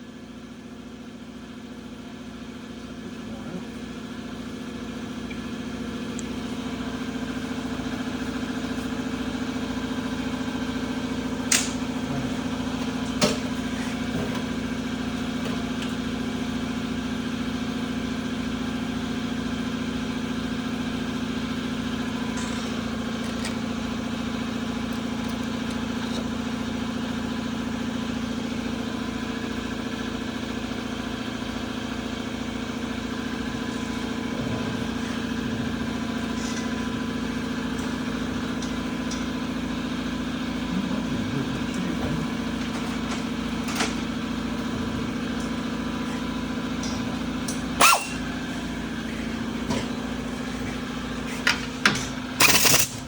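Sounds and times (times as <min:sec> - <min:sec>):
engine idling drone: 0:32.6 - 0:51.0.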